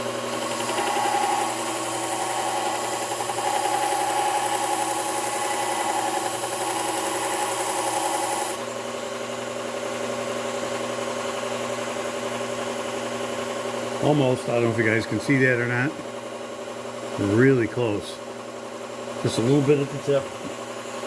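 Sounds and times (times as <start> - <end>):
belt sharpener motor hum: 0.0 - 8.7
chisel grinding on abrasive belt: 0.5 - 8.6.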